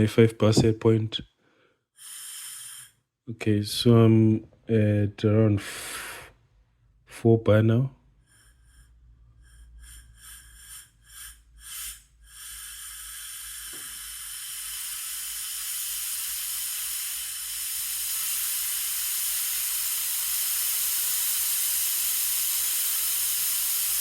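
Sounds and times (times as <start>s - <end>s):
compressed air hissing from nozzle: 8.3s - 24.0s.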